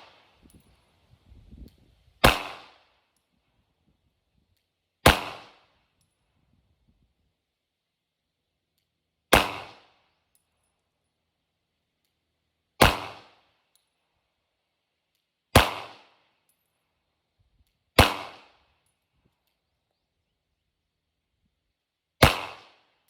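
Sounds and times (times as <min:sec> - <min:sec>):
pistol shots with echo: 0:02.2 - 0:02.8, 0:05.0 - 0:05.6, 0:09.3 - 0:09.9, 0:12.8 - 0:13.3, 0:15.5 - 0:16.1, 0:18.0 - 0:18.6, 0:22.2 - 0:22.8.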